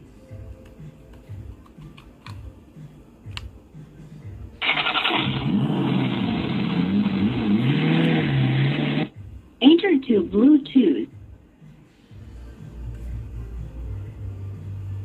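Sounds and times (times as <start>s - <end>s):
recorded engine starting and revving: 4.6s - 9.1s.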